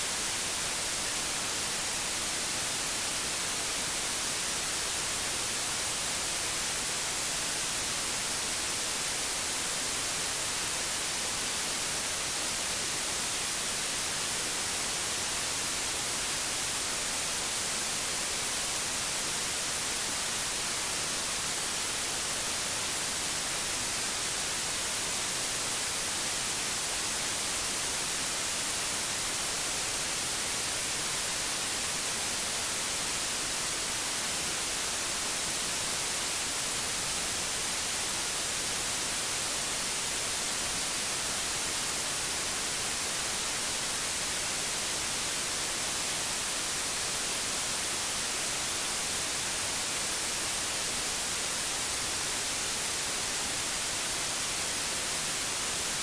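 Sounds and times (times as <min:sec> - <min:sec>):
white noise hiss: 0:00.0 - 0:56.0.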